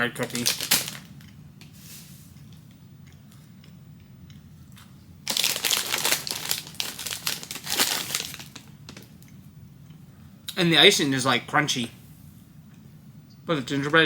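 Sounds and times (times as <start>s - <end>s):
plastic packaging crinkling: 0.0s - 1.1s, 5.2s - 9.2s.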